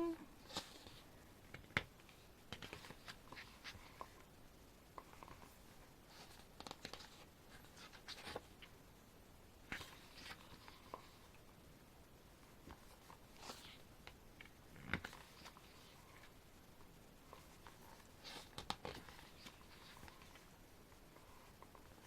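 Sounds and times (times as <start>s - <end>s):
paper pages rustling: 2.0s - 4.2s, 5.0s - 8.7s, 9.7s - 11.3s, 17.3s - 20.5s.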